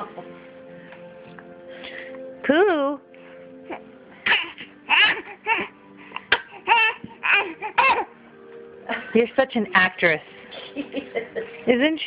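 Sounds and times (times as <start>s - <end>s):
girl fake crying and coughing: 4.2s - 5.7s.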